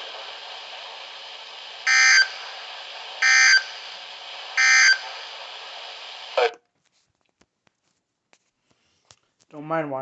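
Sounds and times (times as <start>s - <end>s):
broadcast hiss: 0.0s - 7.4s.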